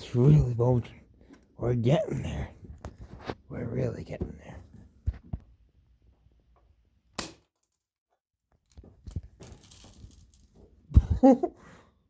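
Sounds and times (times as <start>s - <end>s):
light clinking and handling: 8.5s - 10.8s.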